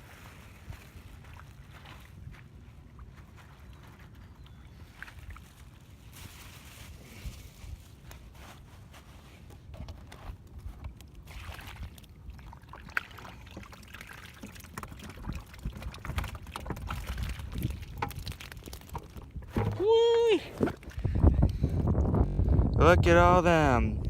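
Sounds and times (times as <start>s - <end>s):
wind rumble on microphone: 0.0s - 12.0s, 14.9s - 24.0s
water pouring from bucket: 11.2s - 19.9s
plastic handling noise: 14.8s - 21.0s.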